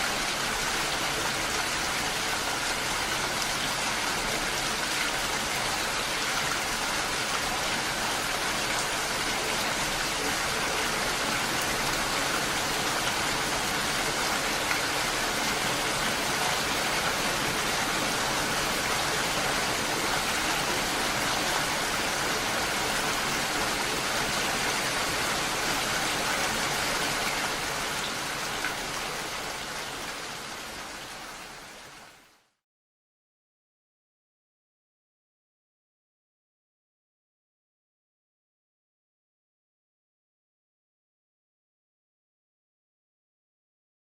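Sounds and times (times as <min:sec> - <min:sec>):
steady rain falling: 0:00.0 - 0:32.6.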